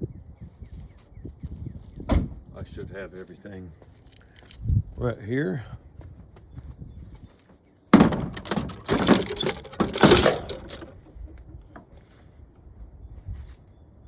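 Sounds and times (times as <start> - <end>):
metal hand tools clattering: 8.0 - 11.1.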